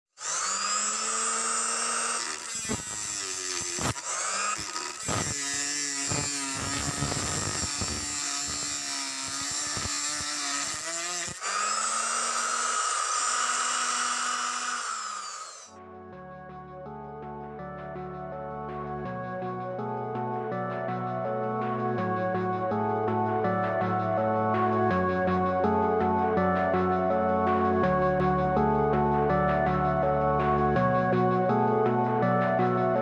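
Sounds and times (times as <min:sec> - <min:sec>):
circular saw whining: 0:00.1 - 0:15.8
saw cutting with knocks: 0:00.2 - 0:15.7
soft music: 0:15.8 - 0:33.0.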